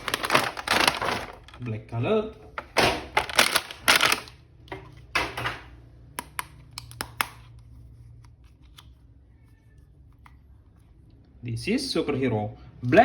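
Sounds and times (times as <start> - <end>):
plastic rustling: 0.0 - 1.8, 2.6 - 4.5.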